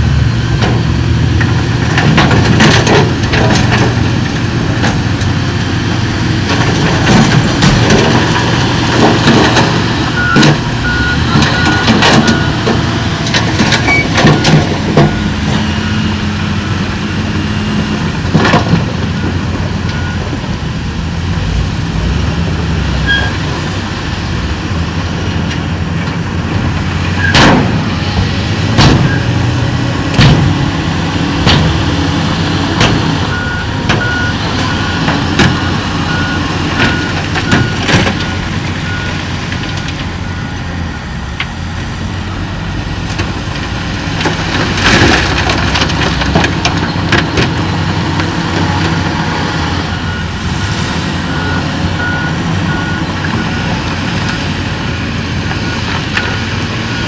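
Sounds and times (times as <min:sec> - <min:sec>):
diesel engines running: 0:00.0 - 0:57.0
rocks knocking and clanking: 0:00.6 - 0:15.8, 0:43.0 - 0:49.5
reversing alarm beeping: 0:10.0 - 0:16.8, 0:19.0 - 0:20.4, 0:33.2 - 0:42.5, 0:48.6 - 0:55.0, 0:55.6 - 0:57.0.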